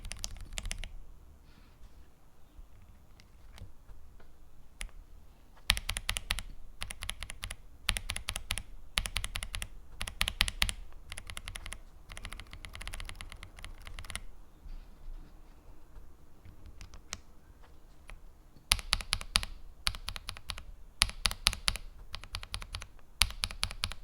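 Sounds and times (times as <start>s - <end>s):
mechanical keyboard typing: 0.0s - 1.0s, 5.6s - 14.3s, 16.5s - 17.3s, 18.0s - 24.0s.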